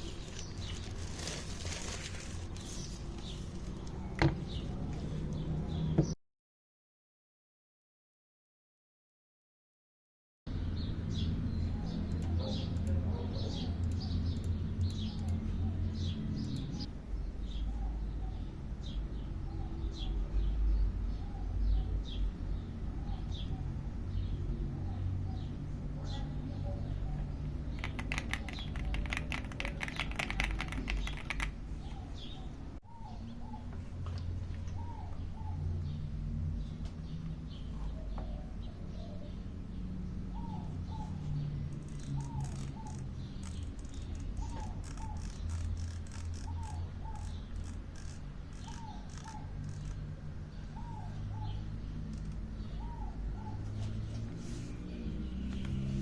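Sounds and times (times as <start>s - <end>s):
birds chirping: 10.5s - 56.0s
mechanical keyboard clicking: 27.8s - 31.6s.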